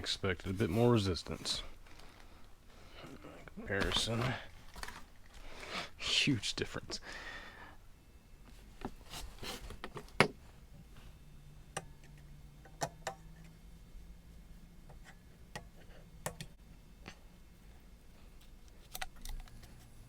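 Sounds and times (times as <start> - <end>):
faint low hum: 0.0 - 20.0.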